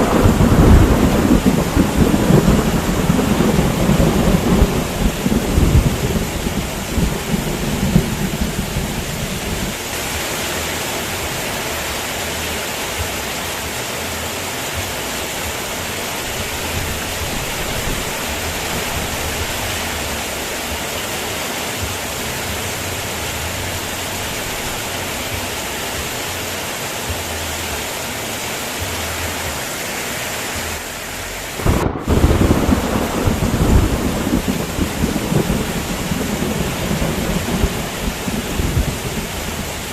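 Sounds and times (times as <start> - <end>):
thunder rumbling: 0.0 - 12.0, 15.3 - 25.4, 31.6 - 39.9
heavy rain falling: 0.0 - 39.9.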